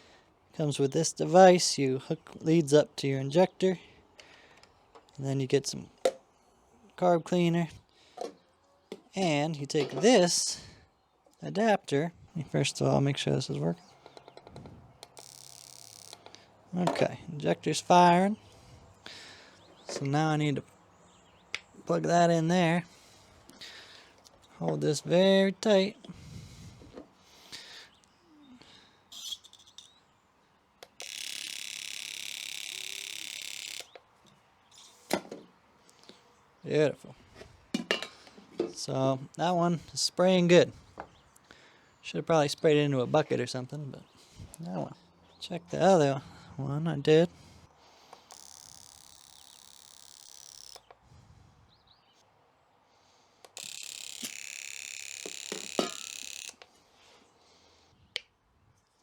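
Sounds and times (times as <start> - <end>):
injector click: 15.0 - 16.2, 30.8 - 34.0, 53.5 - 56.6
fuel injector pulsing hiss: 31.0 - 33.9.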